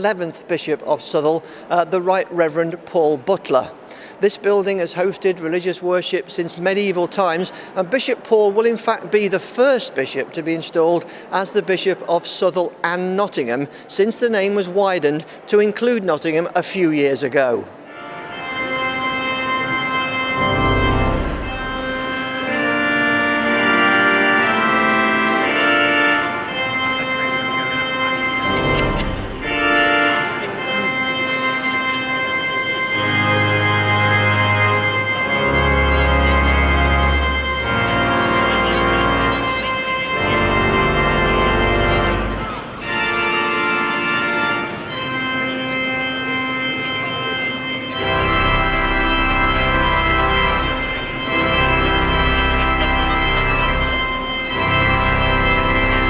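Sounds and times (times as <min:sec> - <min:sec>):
pipe organ chords: 0:17.7 - 0:56.0
deep organ pedal bass note: 0:18.4 - 0:32.2, 0:32.9 - 0:46.6, 0:47.8 - 0:56.0.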